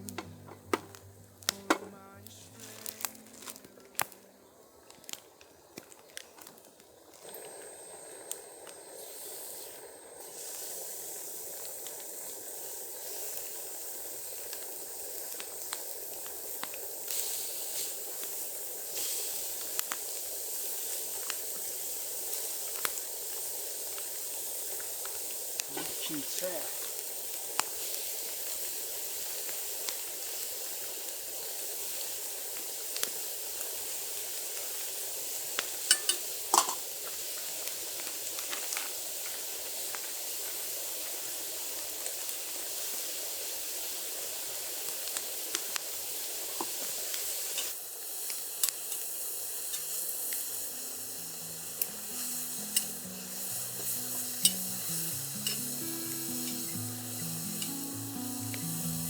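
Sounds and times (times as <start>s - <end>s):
soft background music: 0.0s - 4.9s, 50.5s - 59.0s
food sizzling in a pan: 0.0s - 59.0s.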